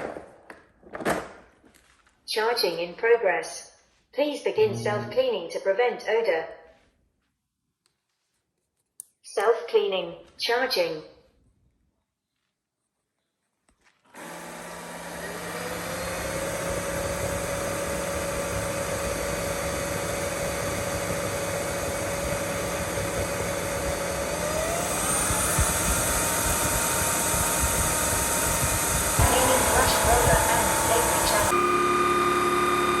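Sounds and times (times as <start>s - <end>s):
vacuum motor and brush roller: 14.1s - 33.0s
rising motor whine: 14.2s - 33.0s.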